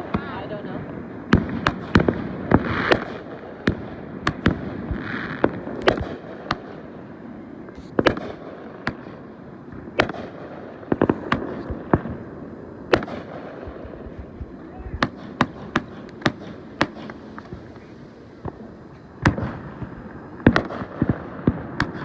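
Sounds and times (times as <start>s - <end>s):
fireworks bangs: 0.0s - 22.0s
hissing crackles: 0.0s - 22.0s.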